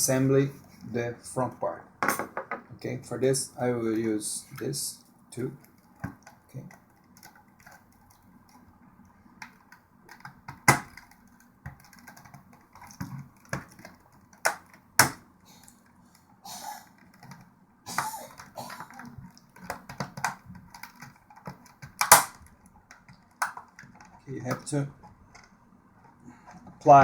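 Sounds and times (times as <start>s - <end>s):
pry tool clicking and snapping plastic: 9.4s - 15.2s, 18.4s - 24.7s.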